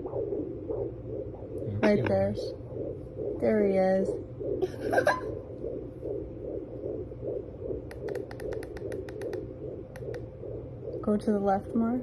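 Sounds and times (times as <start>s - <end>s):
faint steady hum: 0.0s - 12.0s
fetal heartbeat whooshing: 0.0s - 12.0s
sharp clicks: 7.8s - 10.3s.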